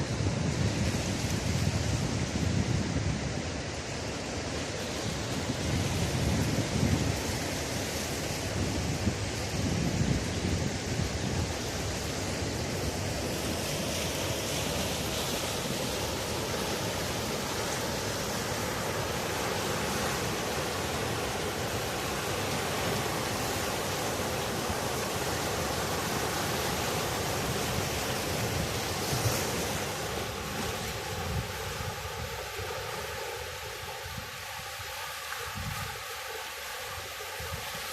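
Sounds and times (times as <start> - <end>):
sea surf breaking on beach: 0.0 - 37.9.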